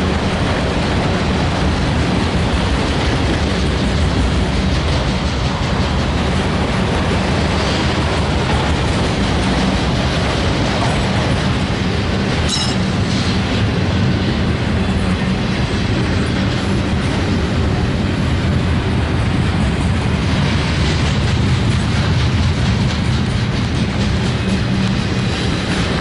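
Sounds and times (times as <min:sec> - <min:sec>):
train wheels rumbling on rails: 0:00.0 - 0:26.0.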